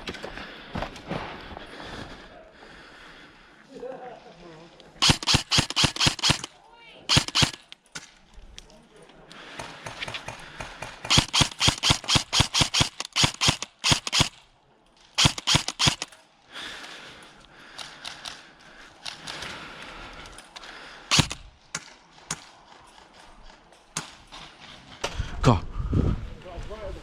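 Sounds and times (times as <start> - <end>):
airsoft guns firing: 5.0 - 8.1, 9.6 - 14.4, 15.2 - 16.1, 21.1 - 22.5.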